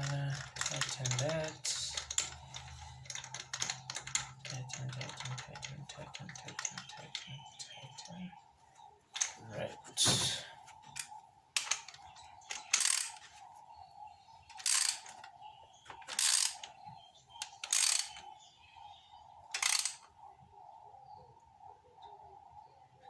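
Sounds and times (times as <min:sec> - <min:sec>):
ratchet wrench clicking: 0:11.0 - 0:13.2, 0:14.5 - 0:15.3, 0:16.0 - 0:16.7, 0:17.4 - 0:18.2, 0:19.5 - 0:20.0.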